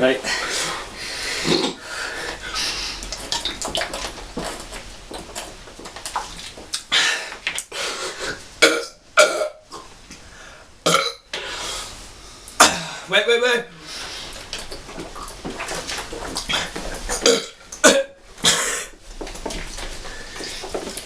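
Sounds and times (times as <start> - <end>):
man burping: 1.4 - 1.8, 8.6 - 9.9, 10.8 - 11.3, 12.6 - 13.1, 17.1 - 19.0.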